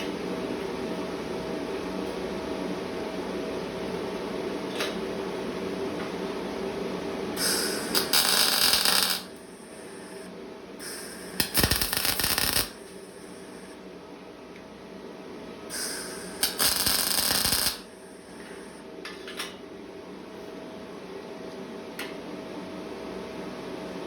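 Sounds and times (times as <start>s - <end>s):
crackling arc welding: 7.4s - 10.2s, 10.8s - 13.7s, 15.7s - 18.7s
welding machine humming: 7.4s - 13.8s, 15.7s - 18.8s.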